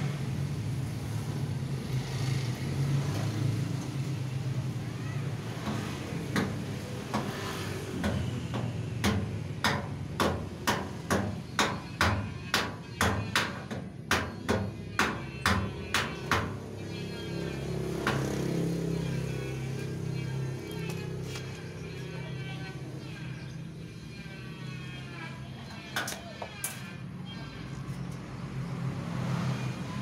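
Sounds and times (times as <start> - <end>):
hammering knocks: 5.6 - 16.8.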